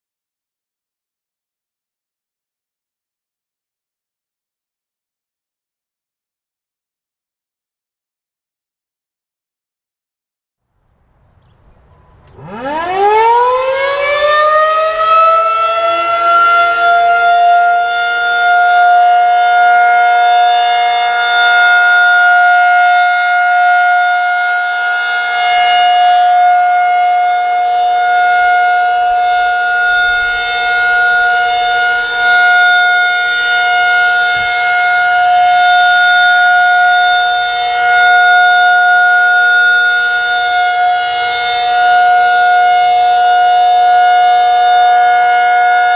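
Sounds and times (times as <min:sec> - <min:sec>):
rotating warning siren wailing: 0:11.8 - 0:45.9.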